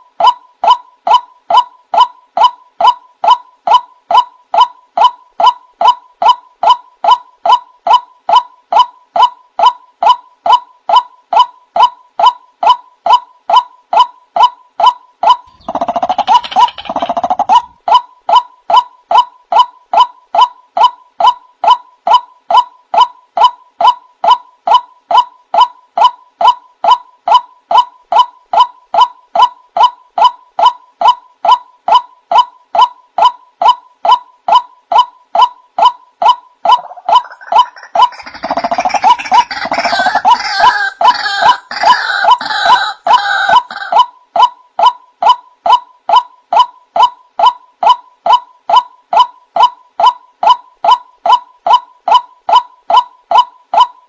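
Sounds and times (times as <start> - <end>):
waterhen calling wak notes: 36.7 - 43.9.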